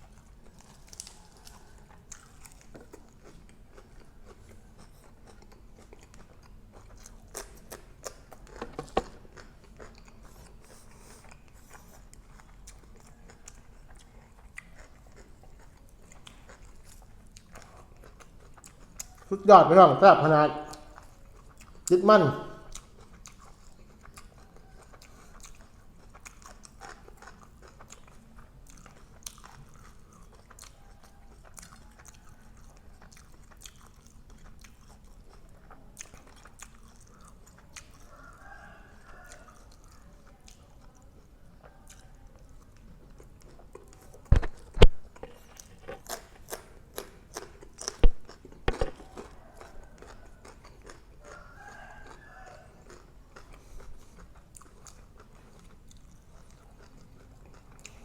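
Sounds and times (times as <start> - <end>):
person chewing food: 0.0 - 19.4, 20.3 - 58.0
wet mouth clicks: 44.3 - 50.2.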